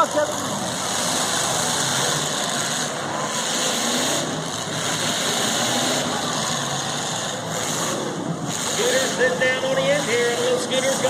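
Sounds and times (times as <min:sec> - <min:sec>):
car engines running together: 0:00.0 - 0:11.0.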